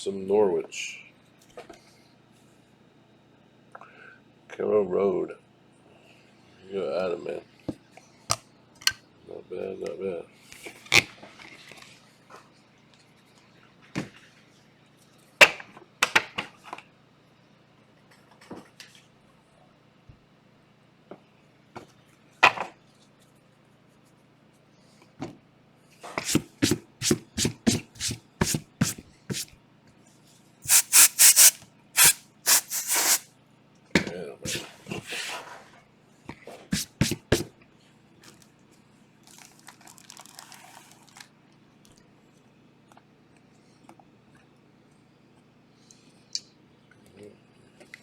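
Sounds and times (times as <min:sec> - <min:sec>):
card pack wrapper crinkling: 0:30.7 - 0:33.2, 0:39.3 - 0:41.3.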